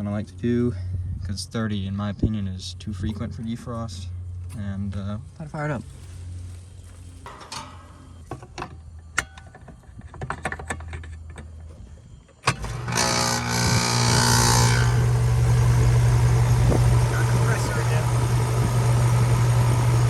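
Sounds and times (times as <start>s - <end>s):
compressor and fan humming: 0.0s - 20.0s.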